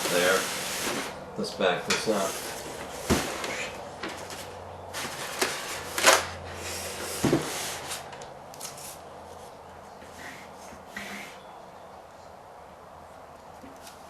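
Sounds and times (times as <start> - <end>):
cardboard and paper rustling: 2.1 - 9.6.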